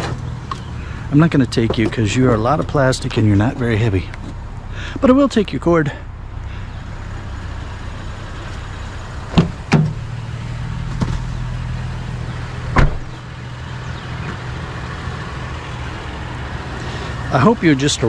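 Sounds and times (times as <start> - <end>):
vehicle engine running: 0.0 - 18.0
sharp knocks: 9.3 - 10.0.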